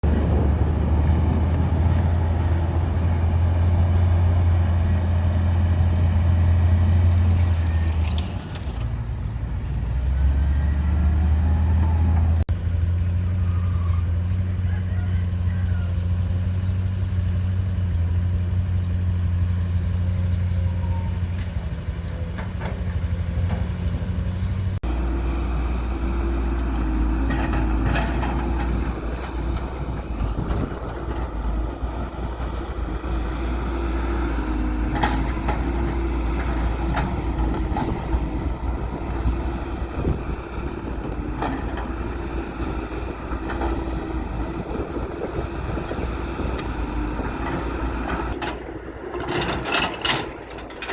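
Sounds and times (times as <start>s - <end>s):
deeper machine running: 0.0s - 8.4s
diesel construction machinery: 0.0s - 50.9s.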